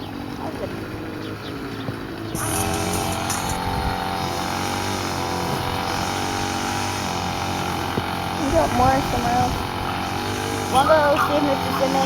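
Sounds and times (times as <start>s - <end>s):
engine starting and running: 0.0s - 12.0s.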